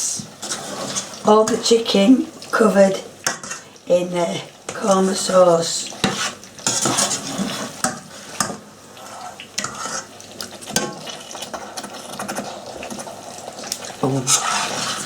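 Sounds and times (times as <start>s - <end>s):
spoon scraping and knocking pan: 0.2s - 1.8s, 3.2s - 3.7s, 4.7s - 10.1s, 14.2s - 15.0s.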